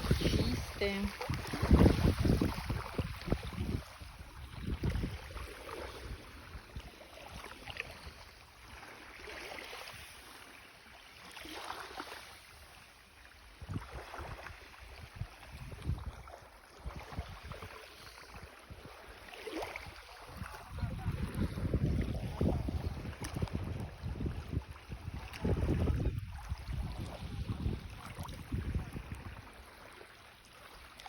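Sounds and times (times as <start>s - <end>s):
wind buffeting microphone: 0.0s - 6.8s, 13.6s - 16.2s, 16.8s - 17.7s, 20.3s - 29.5s
small waves washing in: 0.0s - 31.0s.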